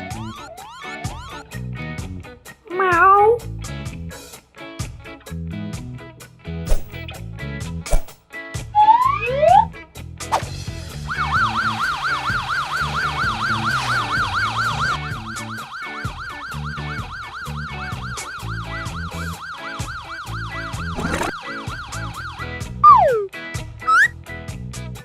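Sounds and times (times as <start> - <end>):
background music: 0.0 - 25.0
falling whistle-like glide: 8.8 - 9.7
warbling emergency siren: 8.8 - 9.7, 11.0 - 23.3, 23.9 - 24.1.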